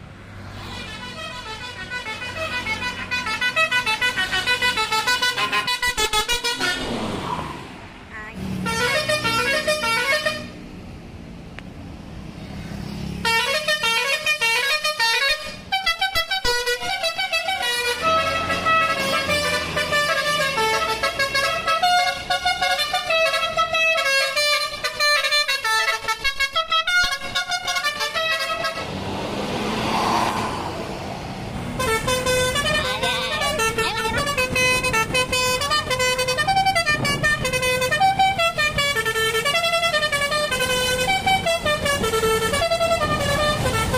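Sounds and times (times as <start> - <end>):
bus horn playing multi-note tunes: 0.5 - 6.9, 8.5 - 10.6, 13.2 - 29.0, 31.7 - 43.9
rushing noise: 6.0 - 8.6, 28.4 - 35.7.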